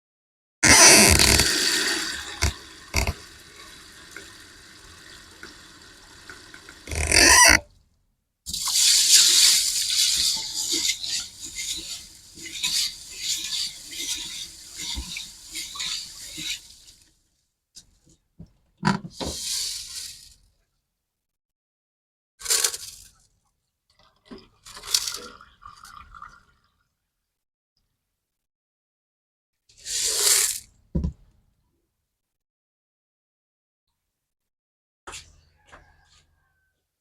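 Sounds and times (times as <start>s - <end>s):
tap water splashing in sink: 1.2s - 6.9s, 8.5s - 17.1s.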